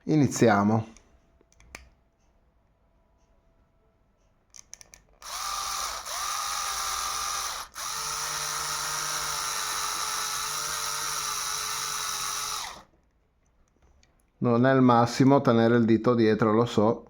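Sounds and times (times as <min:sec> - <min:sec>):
small electric drill boring: 0:05.2 - 0:12.9.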